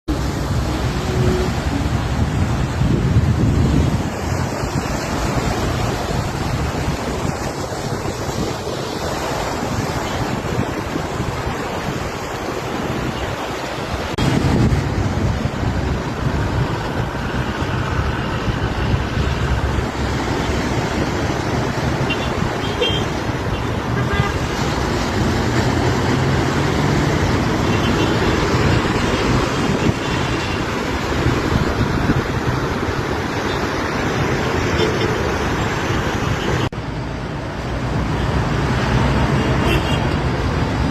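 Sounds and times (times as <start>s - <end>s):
road traffic: 0.0s - 40.9s
waves washing on shore: 0.1s - 40.9s
car horns tooting: 22.1s - 24.5s, 39.6s - 40.2s.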